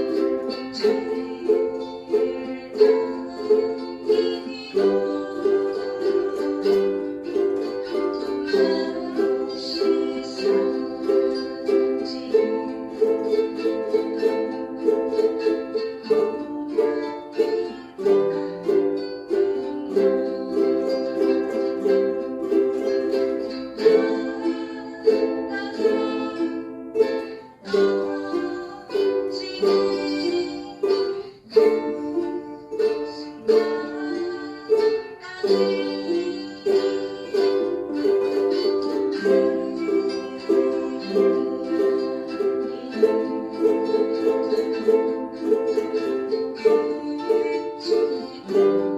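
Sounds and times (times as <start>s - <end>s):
ukulele strumming chords: 0.0s - 48.9s.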